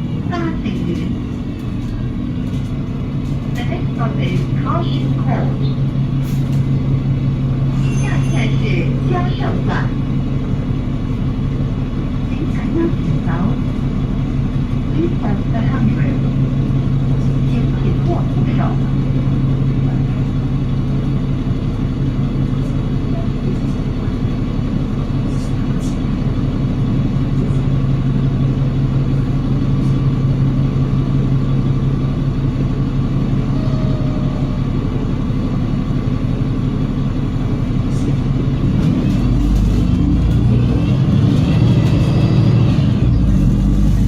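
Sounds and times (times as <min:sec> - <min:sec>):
bus engine humming: 0:00.0 - 0:44.0
engine whine accelerating: 0:38.6 - 0:44.0.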